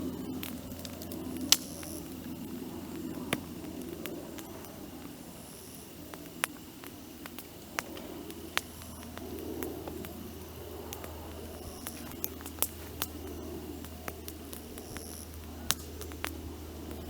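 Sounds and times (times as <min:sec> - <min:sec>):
campfire crackling and popping: 0:00.0 - 0:17.0
low steady fire rumble: 0:00.0 - 0:17.0.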